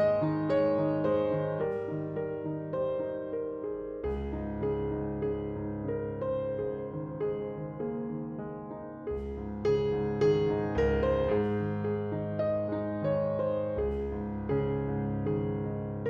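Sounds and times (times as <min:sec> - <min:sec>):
slow piano music: 0:00.0 - 0:16.0
held low bass notes: 0:04.1 - 0:07.5, 0:09.1 - 0:16.0.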